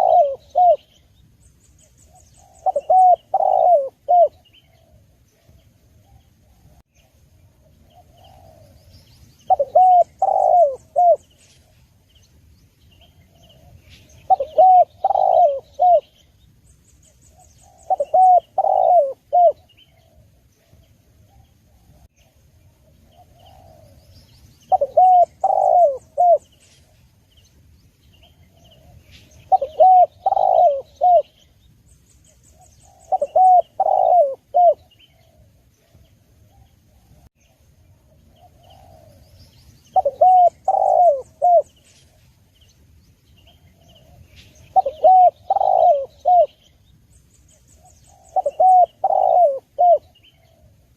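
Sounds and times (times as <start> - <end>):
dove cooing: 0.0 - 1.1, 2.0 - 6.8, 7.6 - 8.9, 9.5 - 11.4, 13.0 - 16.3, 17.3 - 22.1, 22.8 - 27.0, 28.2 - 31.4, 32.5 - 37.3, 38.1 - 42.3, 43.4 - 46.7, 47.7 - 50.9.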